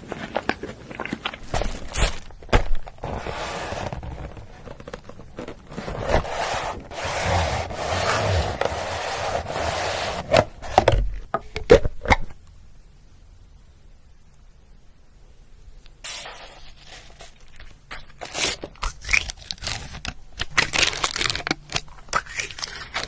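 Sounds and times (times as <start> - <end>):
scraping and rubbing: 0.0 - 11.0, 16.0 - 21.5.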